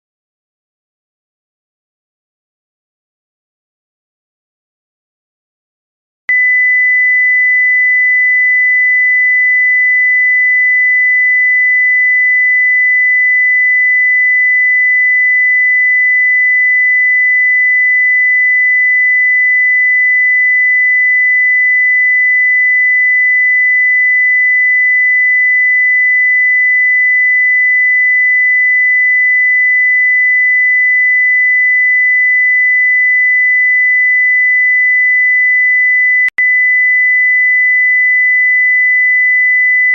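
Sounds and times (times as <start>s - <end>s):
high-pitched fire alarm tone: 6.3s - 14.4s, 21.4s - 39.9s.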